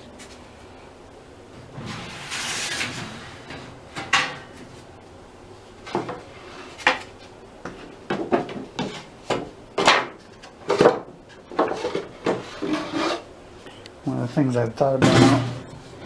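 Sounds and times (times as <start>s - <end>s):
objects clanking in metal drawers: 1.6s - 4.7s, 15.0s - 15.7s.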